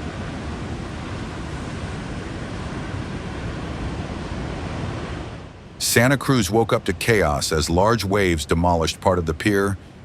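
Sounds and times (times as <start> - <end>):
heavy storm surf: 0.0 - 10.0.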